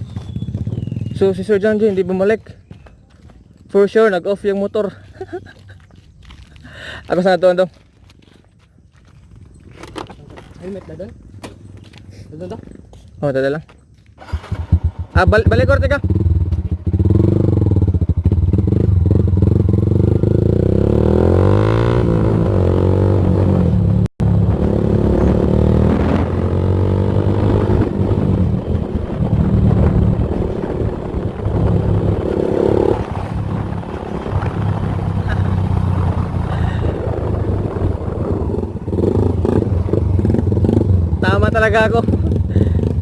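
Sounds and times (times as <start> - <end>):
motorcycle revving loudly: 14.2 - 43.0.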